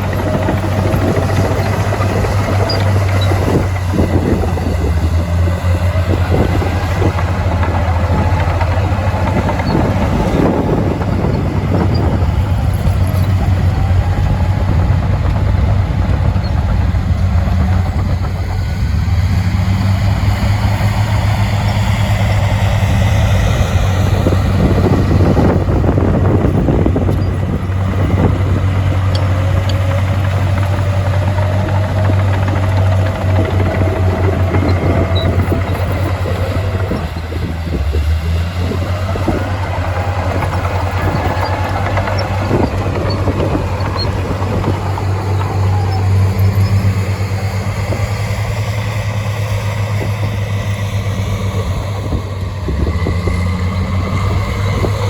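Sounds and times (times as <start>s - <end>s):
diesel machinery engine drone: 0.0s - 55.0s.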